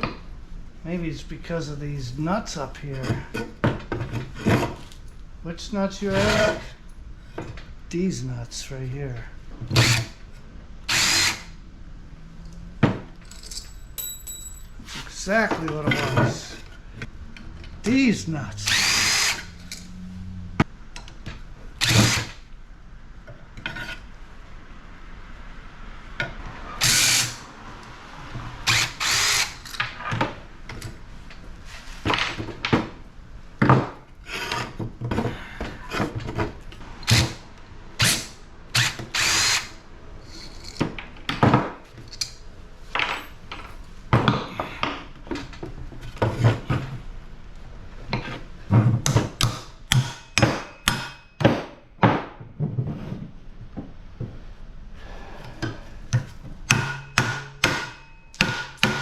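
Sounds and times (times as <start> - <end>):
power drill backing out screws: 10.9 - 11.5, 28.7 - 29.8.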